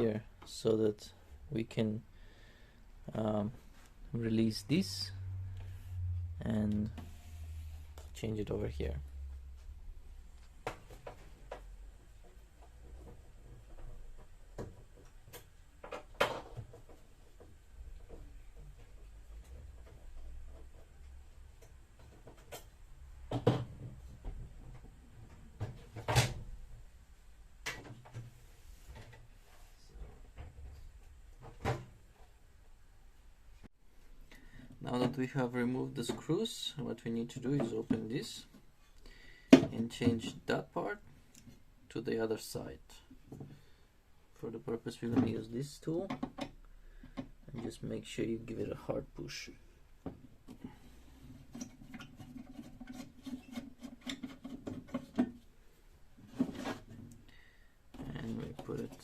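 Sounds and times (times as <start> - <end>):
steady low hum: 0.0 - 14.6.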